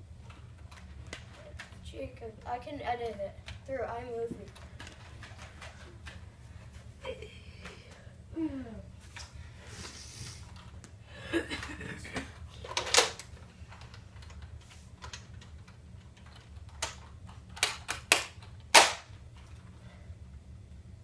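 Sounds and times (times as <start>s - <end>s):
toy blaster shots snapping: 17.6s - 19.1s.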